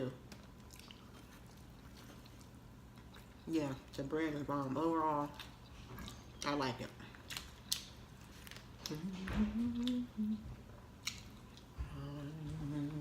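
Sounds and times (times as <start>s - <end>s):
person humming: 8.9s - 10.5s, 11.8s - 13.0s
chewing and wet mouth clicks: 11.0s - 11.7s.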